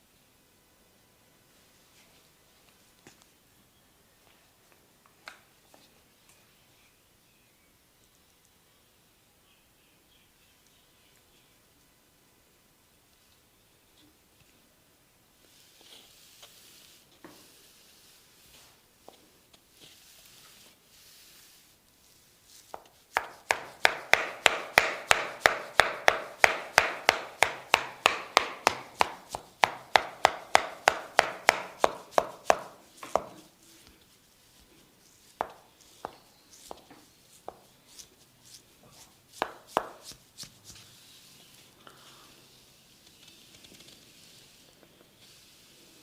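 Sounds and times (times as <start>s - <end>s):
percussive massage strikes: 22.8s - 33.4s, 39.3s - 40.5s.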